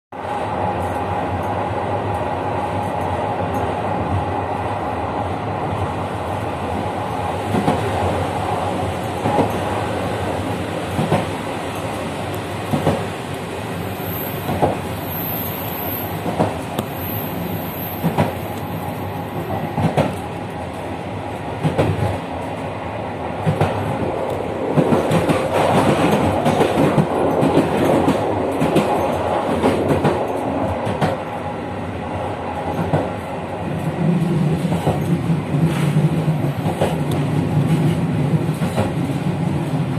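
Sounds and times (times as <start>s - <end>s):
train rumble: 0.1s - 39.9s
train wheels clacking on rails: 7.4s - 13.2s, 14.3s - 20.3s, 21.5s - 22.6s, 23.4s - 31.4s, 32.6s - 39.9s.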